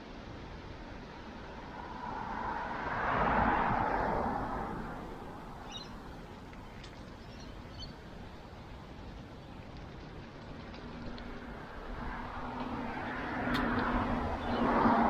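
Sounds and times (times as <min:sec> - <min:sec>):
car passing by: 0:01.0 - 0:07.6, 0:10.7 - 0:15.0.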